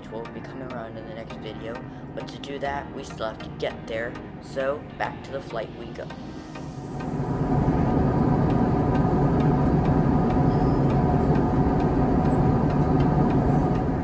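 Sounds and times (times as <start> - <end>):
faint hum: 5.5 - 14.0
airliner cabin jet noise: 5.7 - 14.0.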